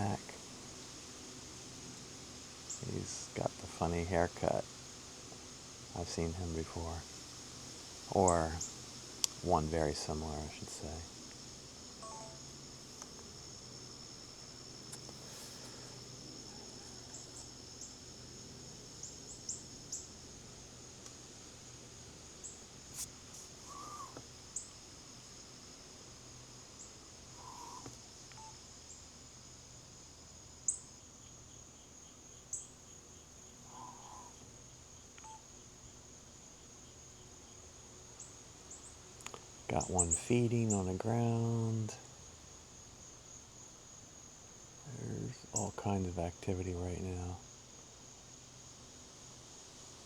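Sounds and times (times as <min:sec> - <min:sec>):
crickets trilling: 0:00.0 - 0:50.0
small birds chirping: 0:02.6 - 0:20.2, 0:22.4 - 0:24.8, 0:26.7 - 0:29.1, 0:30.6 - 0:41.9, 0:44.9 - 0:47.4
fainter lower bird calls: 0:12.0 - 0:13.4, 0:22.4 - 0:24.8, 0:26.8 - 0:29.1, 0:30.6 - 0:37.6, 0:38.2 - 0:42.0, 0:44.9 - 0:46.2.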